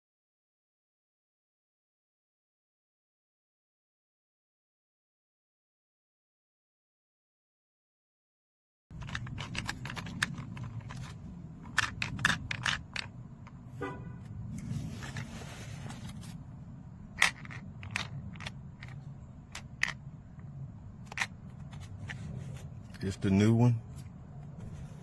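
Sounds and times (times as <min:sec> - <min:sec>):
clicks and knocks of handling: 0:08.9 - 0:13.6, 0:17.2 - 0:23.1
low steady hum: 0:08.9 - 0:25.0.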